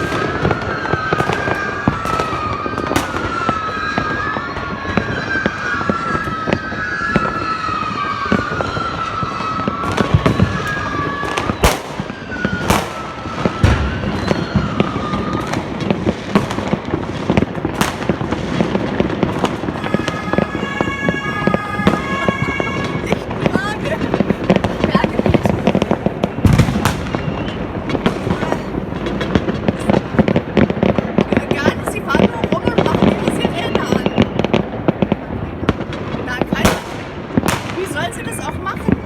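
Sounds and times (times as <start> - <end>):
wavering high whistle: 0.0 - 15.6, 26.8 - 27.7
firecrackers crackling: 0.0 - 39.0
firework bangs: 0.0 - 39.0.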